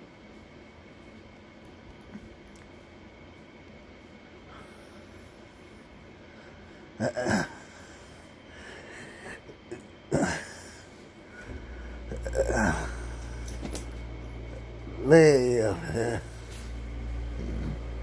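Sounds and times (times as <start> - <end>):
steady low hum: 0.0 - 18.0
breathy vocal sounds falling in pitch: 11.4 - 13.5.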